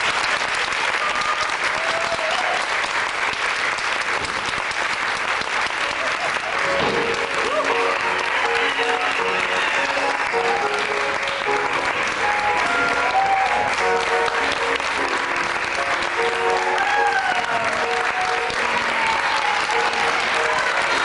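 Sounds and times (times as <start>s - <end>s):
audience applauding: 0.0s - 21.0s
pit band holding notes: 6.6s - 21.0s.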